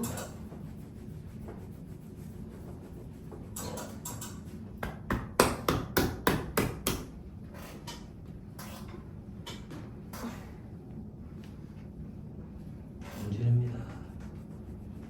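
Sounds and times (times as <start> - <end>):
hands rubbing on skin: 0.2 - 3.6, 14.2 - 15.0.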